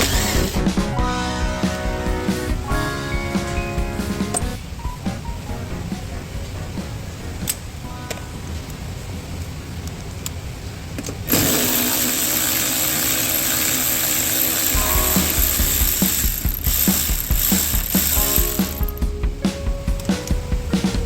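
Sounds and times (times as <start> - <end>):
loud mechanical whirring: 0.0 - 0.8, 11.3 - 18.2
ratchet tool clicking: 11.4 - 18.2.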